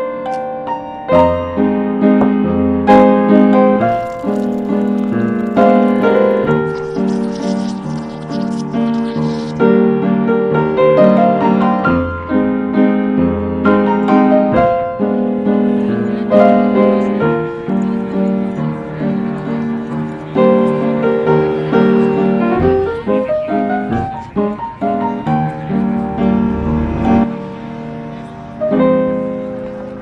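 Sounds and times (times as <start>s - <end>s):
piano music: 0.0s - 30.0s.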